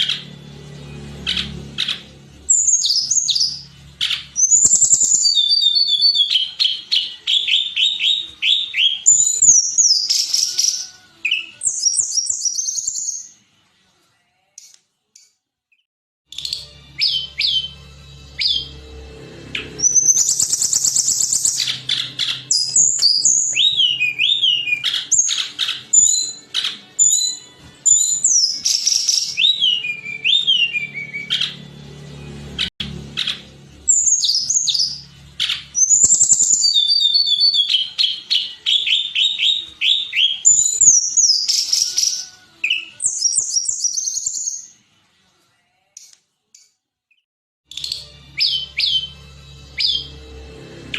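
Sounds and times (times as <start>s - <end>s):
songbird whistling and trilling: 1.3s - 13.4s, 16.3s - 17.8s, 18.4s - 18.7s, 19.6s - 31.6s, 33.2s - 44.7s, 47.7s - 50.2s.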